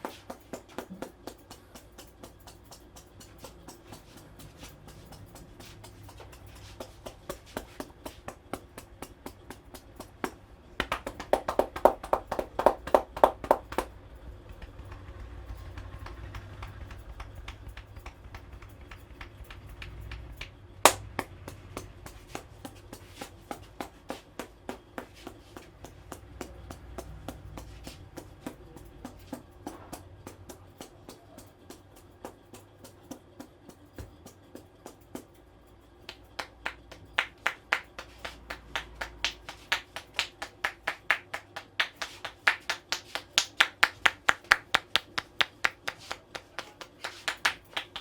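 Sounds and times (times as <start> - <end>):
hands tapping and slapping: 0.0 - 14.0, 15.8 - 35.4, 36.1 - 48.0.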